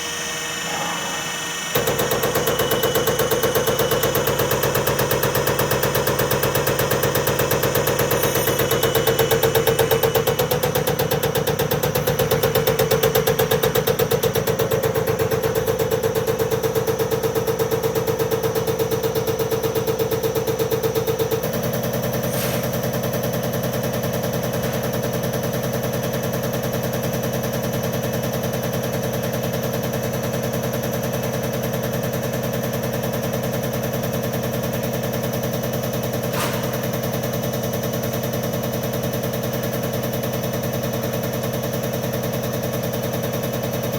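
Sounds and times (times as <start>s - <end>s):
steady machine hum: 0.0s - 27.5s, 34.6s - 38.4s
injector firing rattle: 1.0s - 17.6s, 36.0s - 37.6s.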